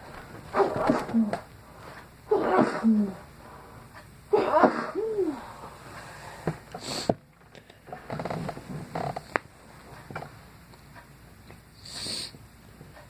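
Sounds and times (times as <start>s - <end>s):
person sneezing: 0.5s - 1.4s, 2.3s - 3.2s, 4.3s - 5.5s.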